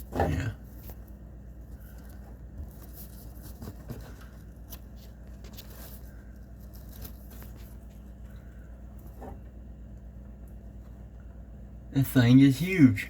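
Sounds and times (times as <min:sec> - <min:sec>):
rustling: 0:00.0 - 0:09.7.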